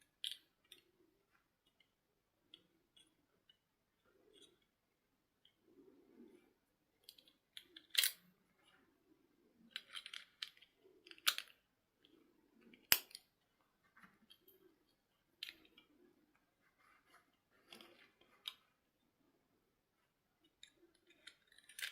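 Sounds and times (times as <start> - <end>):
plastic pieces clicking: 0.1 - 0.8, 7.0 - 8.2, 9.7 - 11.6, 12.8 - 13.3, 20.5 - 21.9
plastic toy pieces rustling: 9.7 - 11.5, 20.6 - 21.9.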